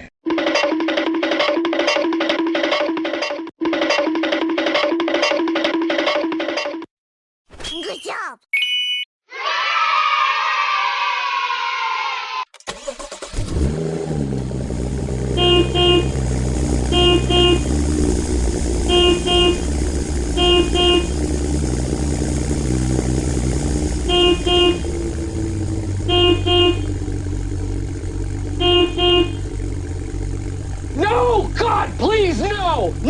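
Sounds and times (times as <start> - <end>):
horn double beeps: 8.6 - 9.1, 15.4 - 16.2, 16.9 - 17.8, 18.8 - 21.2, 24.0 - 25.1, 25.9 - 27.4, 28.4 - 29.6
vehicle engine running: 13.2 - 33.0.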